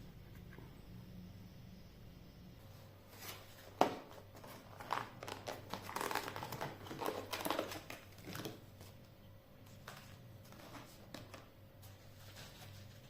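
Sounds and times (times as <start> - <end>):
thin sheet crinkling: 3.1 - 9.0, 9.6 - 13.0.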